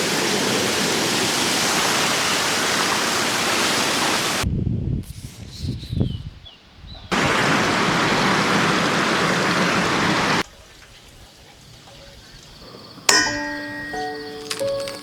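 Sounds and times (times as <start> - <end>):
stream water rushing: 0.0 - 4.4, 7.1 - 10.4
music: 13.2 - 15.0.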